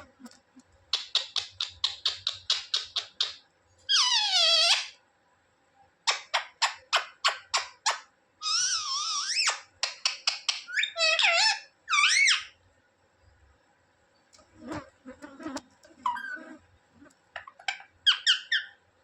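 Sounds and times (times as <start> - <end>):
parrot calling: 0.9 - 5.0, 6.1 - 9.6, 10.7 - 12.5, 16.0 - 16.6, 17.4 - 18.8
parrot screech: 3.9 - 5.0, 8.4 - 9.6, 10.8 - 12.5, 16.0 - 16.6.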